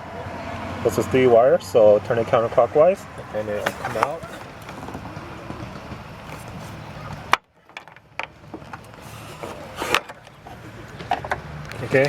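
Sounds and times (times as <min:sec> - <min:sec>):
plastic clicks and knocks: 0:06.3 - 0:12.0.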